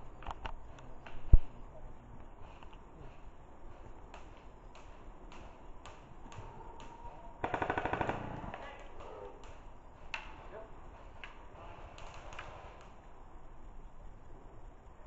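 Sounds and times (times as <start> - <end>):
airsoft gun full-auto burst: 7.4 - 8.6.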